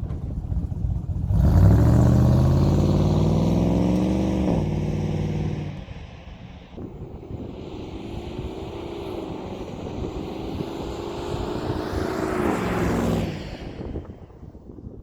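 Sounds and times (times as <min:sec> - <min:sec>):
car engine accelerating: 0:00.0 - 0:06.1, 0:06.8 - 0:14.6
road and wind noise: 0:00.0 - 0:15.0.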